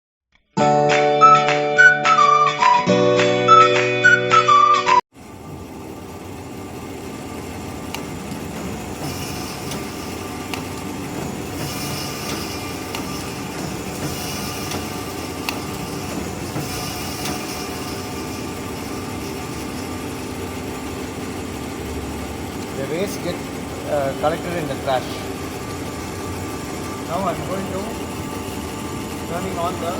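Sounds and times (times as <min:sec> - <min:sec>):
paper drilling machine motor: 0:05.8 - 0:29.9.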